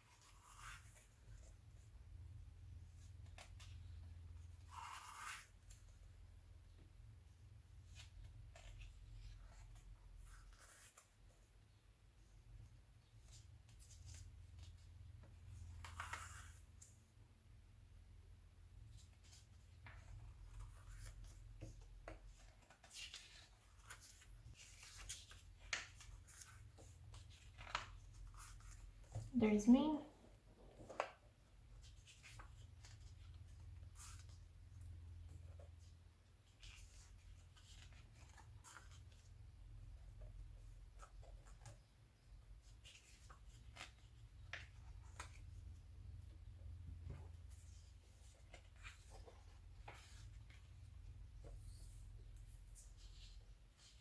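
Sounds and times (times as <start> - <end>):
magazine pages rustling: 19.0 - 29.3.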